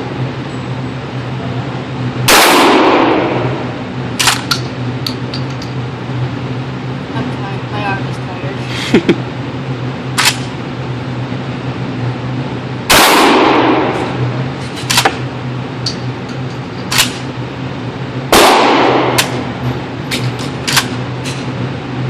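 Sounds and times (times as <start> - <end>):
steady low hum: 0.0 - 22.0
shotgun blasts with echo: 2.3 - 3.6, 12.9 - 14.1, 18.3 - 19.4.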